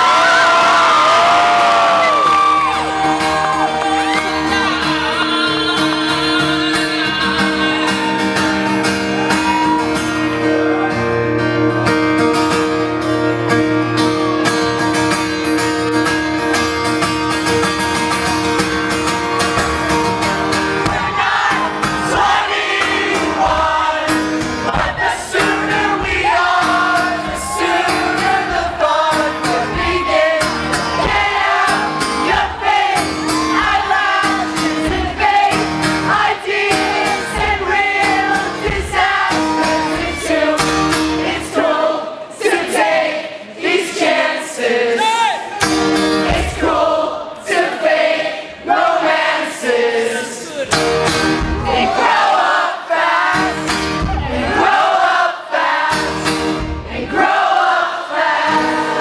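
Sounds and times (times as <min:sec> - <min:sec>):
person singing: 0:00.0 - 0:12.0, 0:21.0 - 0:42.9
acoustic guitar strumming: 0:00.0 - 0:42.0, 0:45.2 - 0:47.0, 0:50.6 - 0:52.4, 0:53.2 - 0:54.8, 0:55.6 - 0:59.0
audience voices: 0:00.0 - 0:59.0.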